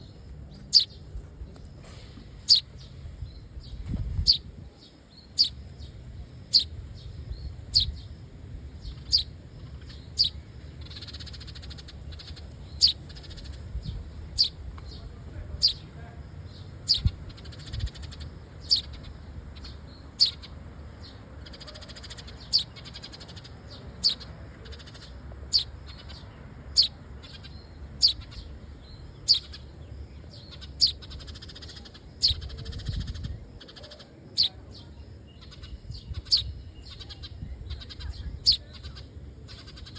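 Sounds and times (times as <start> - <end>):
steady low rumble: 0.0 - 31.2.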